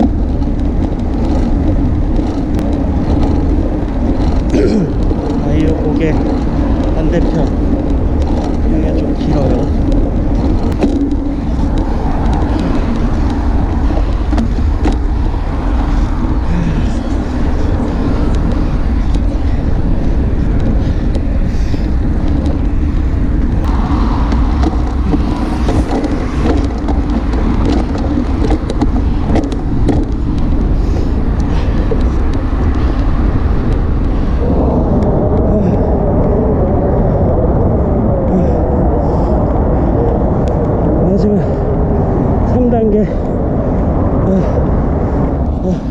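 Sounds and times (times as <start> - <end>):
rough noise: 0.0 - 45.9
wind buffeting microphone: 0.0 - 45.9.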